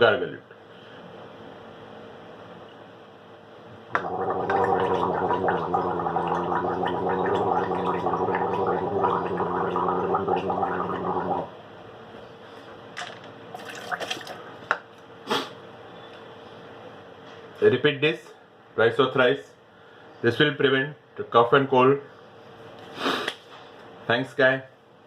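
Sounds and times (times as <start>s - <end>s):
man gargling: 3.9s - 11.5s.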